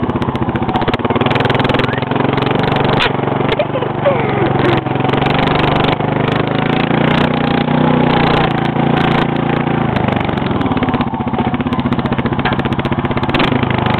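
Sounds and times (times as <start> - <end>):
small engine running: 0.0 - 13.9.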